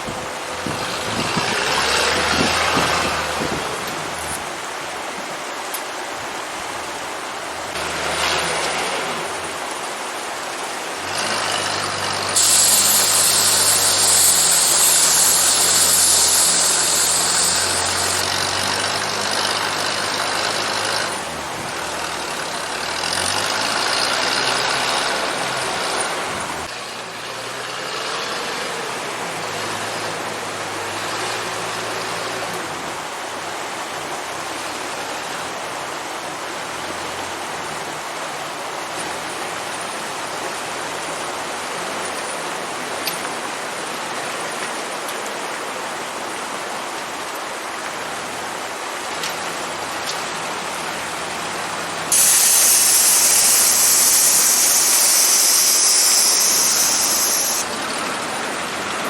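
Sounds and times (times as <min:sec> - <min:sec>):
truck engine running: 0:10.7 - 0:26.7, 0:50.9 - 0:59.0
loud hiss: 0:11.0 - 0:26.6, 0:52.0 - 0:58.2.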